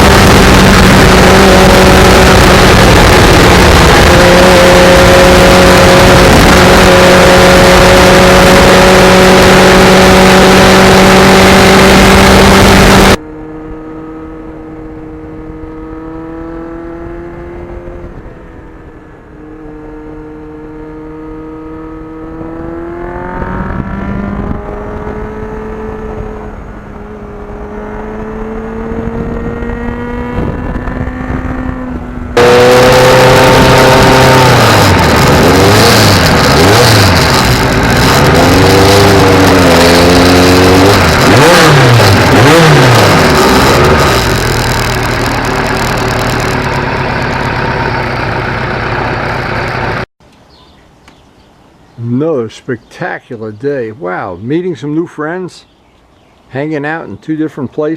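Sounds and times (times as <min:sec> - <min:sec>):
wind rush over microphone: 0:00.0 - 0:13.2, 0:22.3 - 0:44.6
motorcycle engine: 0:00.0 - 0:50.6.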